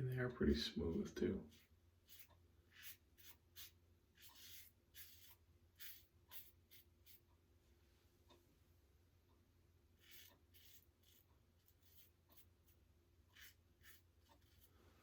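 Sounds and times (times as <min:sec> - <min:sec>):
razor scraping stubble: 0:01.4 - 0:07.3, 0:10.0 - 0:14.8.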